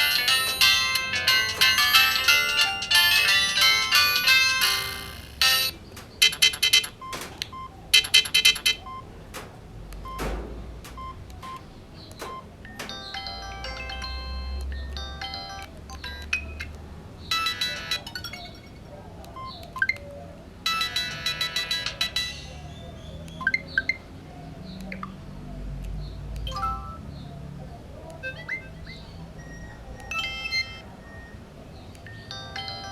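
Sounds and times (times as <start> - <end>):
mobile phone ringtone melodies: 0.0 - 9.0, 12.3 - 16.6, 17.3 - 18.9, 20.7 - 22.6, 28.2 - 31.4, 32.3 - 32.9
sharp clicks: 0.0 - 16.8.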